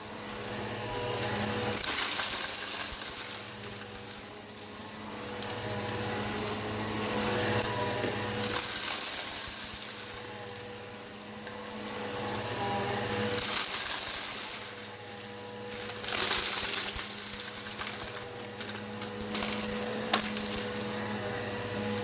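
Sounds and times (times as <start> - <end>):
upright vacuum cleaner running: 0.0 - 22.0
ticks of debris: 15.8 - 21.5.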